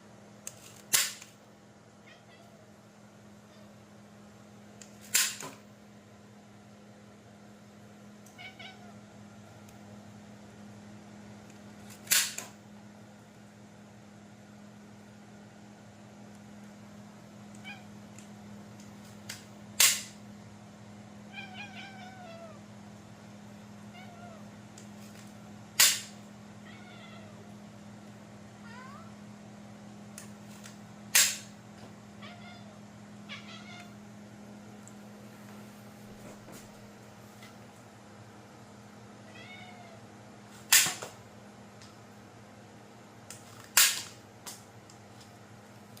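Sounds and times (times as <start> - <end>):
loud sharp clicks: 0.8 - 1.3, 4.8 - 5.6, 12.0 - 12.5, 19.3 - 20.2, 25.8 - 26.2, 31.1 - 31.5, 40.7 - 41.1, 43.8 - 44.6
cat meowing faintly: 2.0 - 2.7, 8.4 - 9.0, 17.6 - 17.9, 21.3 - 22.6.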